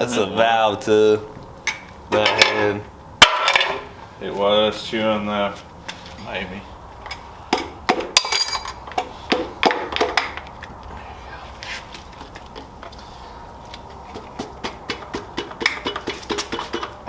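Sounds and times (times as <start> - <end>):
metal parts and tools clinking: 8.2 - 8.8
ringing metal clink: 8.2 - 8.8.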